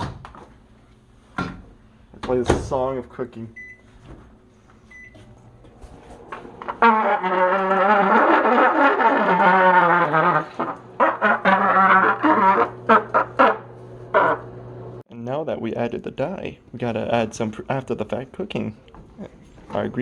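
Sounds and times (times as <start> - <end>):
brassy trombone-like tune: 6.8 - 14.4.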